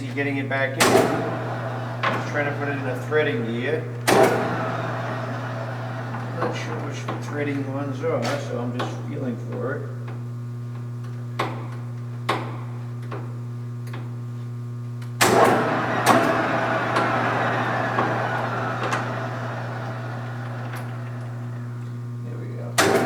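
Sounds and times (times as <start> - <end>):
lathe gears clunk and whir: 0.7 - 9.0, 15.2 - 22.0, 22.7 - 23.0.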